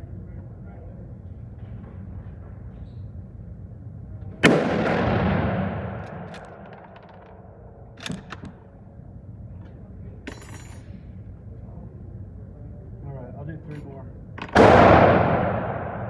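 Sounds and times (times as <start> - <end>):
rifle shot with echo: 4.4 - 7.5, 14.5 - 16.0.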